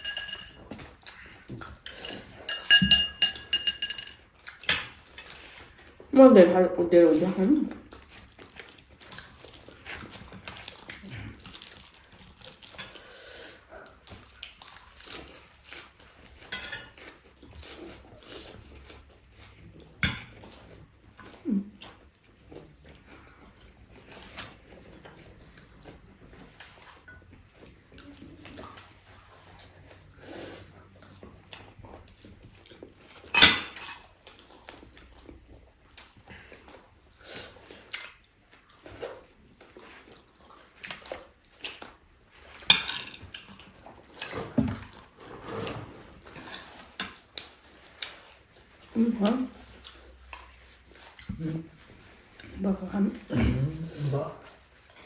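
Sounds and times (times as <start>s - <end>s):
cutlery clicking against plates: 0.0s - 0.6s, 2.5s - 5.4s
chewing food: 0.0s - 6.1s, 7.1s - 33.4s, 34.0s - 55.0s.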